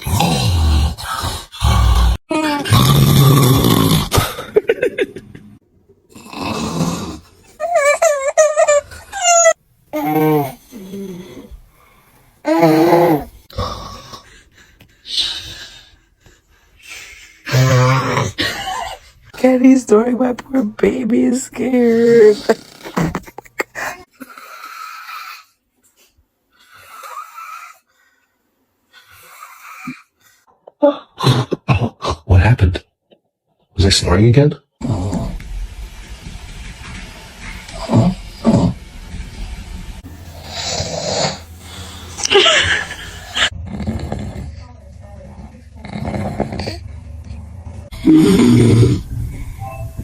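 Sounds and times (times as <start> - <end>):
man snoring: 0.0 - 4.4, 6.1 - 7.4, 10.0 - 11.6, 12.5 - 14.3, 17.5 - 18.5, 22.1 - 25.4, 40.0 - 44.4, 47.9 - 49.2
high whimpering cries: 7.6 - 11.4, 40.2 - 43.5.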